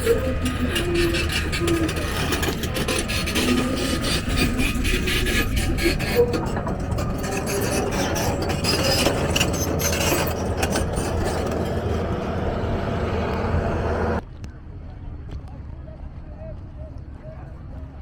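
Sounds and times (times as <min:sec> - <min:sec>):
engine rumble: 0:00.0 - 0:14.2
street and site noise: 0:00.0 - 0:18.0.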